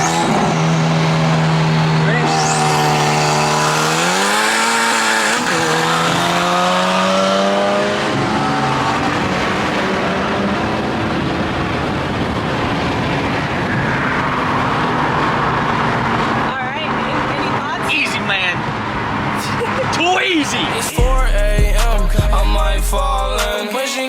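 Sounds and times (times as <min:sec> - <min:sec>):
car engine accelerating: 0:00.0 - 0:17.8
road and tyre rush: 0:00.0 - 0:21.0.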